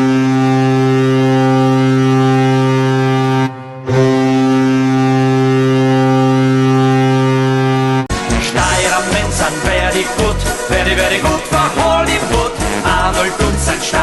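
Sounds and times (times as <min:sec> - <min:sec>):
arena goal horn blasts: 0:00.0 - 0:08.1.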